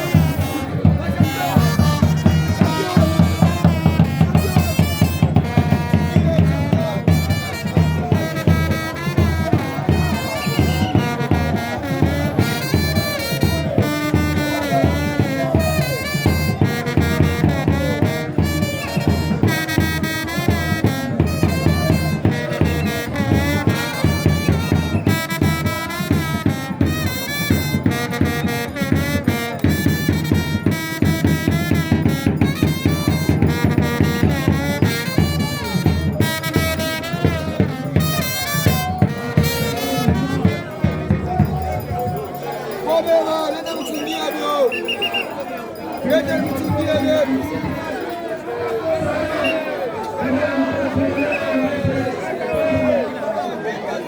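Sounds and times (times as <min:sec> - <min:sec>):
steady drum beat: 0:00.0 - 0:42.4
brass horns: 0:00.0 - 0:53.6.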